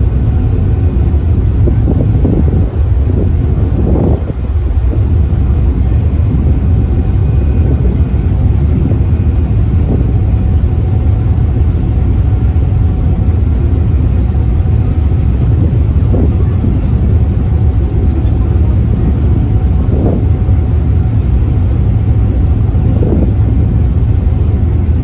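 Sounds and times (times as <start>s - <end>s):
ship engine rumble: 0.0s - 25.0s
wind buffeting microphone: 0.0s - 25.0s.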